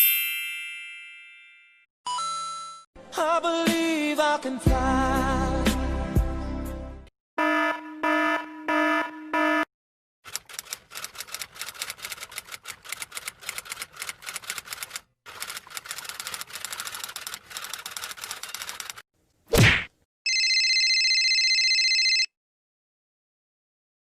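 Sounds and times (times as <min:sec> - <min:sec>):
fast typing clatter: 0:10.3 - 0:19.0.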